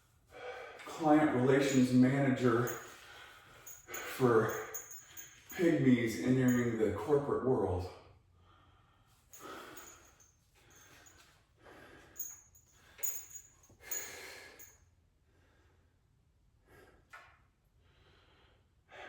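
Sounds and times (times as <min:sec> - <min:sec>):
man breathing heavily: 0:00.3 - 0:05.7, 0:08.4 - 0:16.0, 0:17.8 - 0:19.0.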